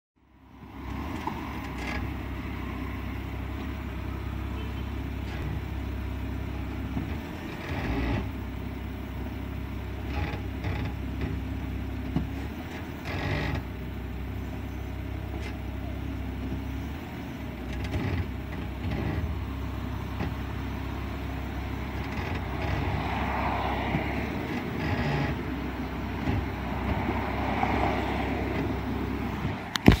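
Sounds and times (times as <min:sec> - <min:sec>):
low engine hum: 0:00.2 - 0:30.0
rough brake noise: 0:17.2 - 0:30.0
car brakes knocking: 0:17.6 - 0:30.0.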